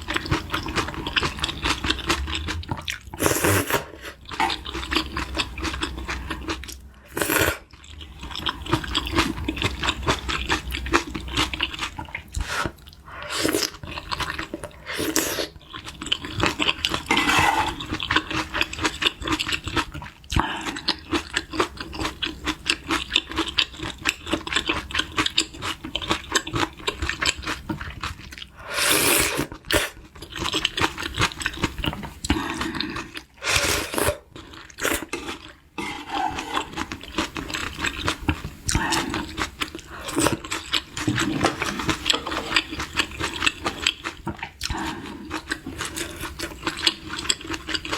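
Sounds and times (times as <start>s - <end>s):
person chewing and crunching: 0.0s - 47.9s
slurps or gulps: 1.7s - 4.7s, 41.0s - 42.8s.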